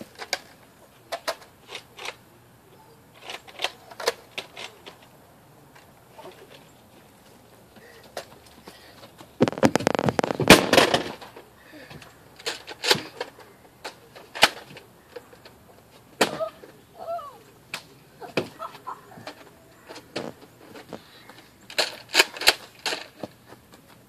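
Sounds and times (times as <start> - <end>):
toy blaster clacks and pops: 9.4 - 10.6.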